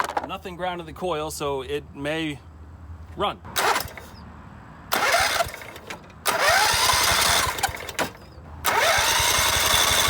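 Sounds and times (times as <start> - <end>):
electric starter cranking engine: 3.6 - 4.1, 4.9 - 10.0.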